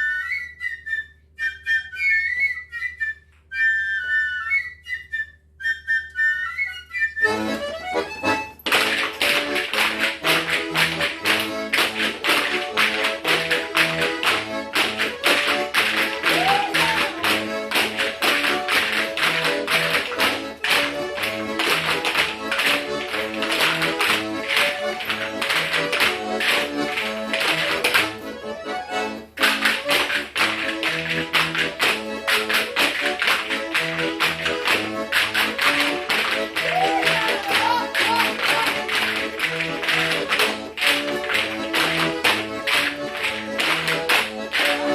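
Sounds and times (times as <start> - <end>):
high whistle-like melody: 0.0 - 8.5
accordion folk dance tune: 3.2 - 44.9
percussive taps: 7.8 - 28.6, 29.4 - 44.9.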